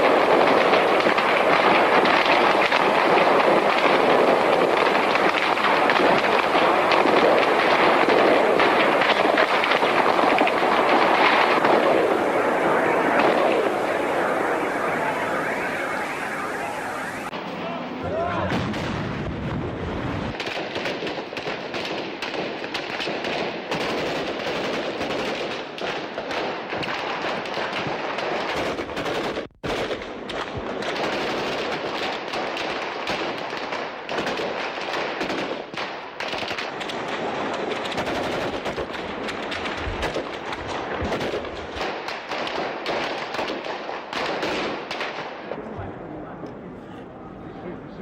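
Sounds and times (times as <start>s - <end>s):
automatic gunfire: 20.3s - 45.5s.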